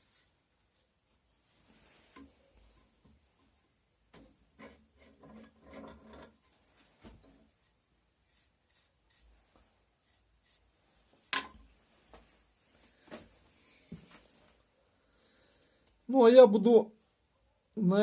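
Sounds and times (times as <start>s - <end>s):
handling rubbing and knocks: 1.5s - 12.4s.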